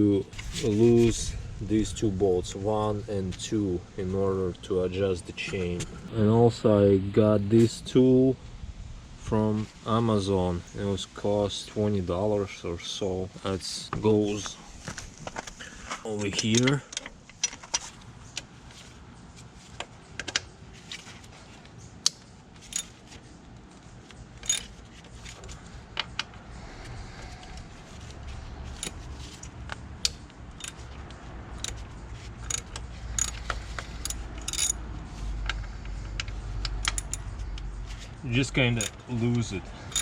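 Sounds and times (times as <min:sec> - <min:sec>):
hand tools clinking on metal: 0:16.0 - 0:17.4, 0:24.4 - 0:24.8, 0:30.6 - 0:30.8, 0:32.4 - 0:34.9, 0:36.8 - 0:37.4, 0:38.4 - 0:40.0.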